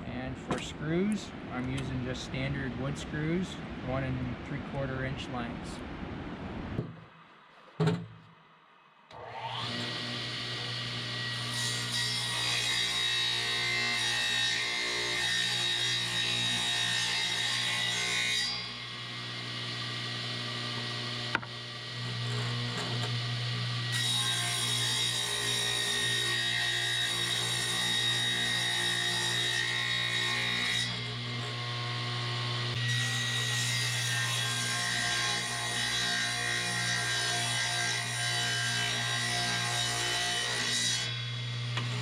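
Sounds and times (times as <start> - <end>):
power saw cutting wood: 9.1 - 42.0.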